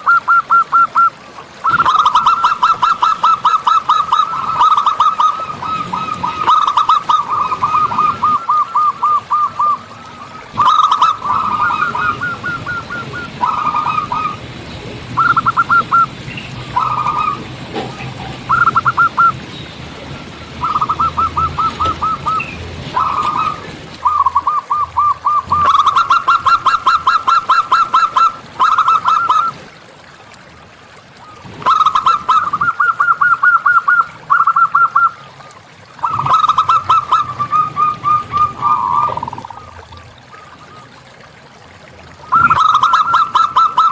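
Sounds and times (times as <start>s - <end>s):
doves cooing: 0.0s - 29.8s, 31.0s - 41.2s, 42.1s - 43.9s.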